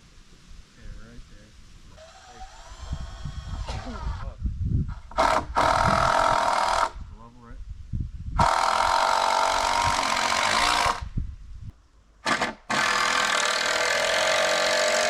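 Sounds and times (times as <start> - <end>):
power drill running: 1.9 - 4.3, 5.1 - 6.9, 8.4 - 11.0, 12.3 - 15.0.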